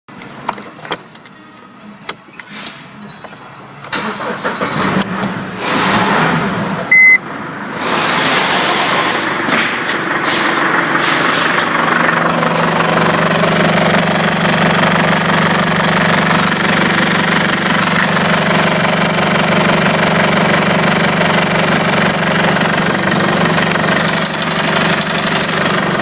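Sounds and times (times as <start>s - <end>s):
diesel engine cranking and idling: 2.1s - 26.0s
loud electronic beep: 6.9s - 7.2s.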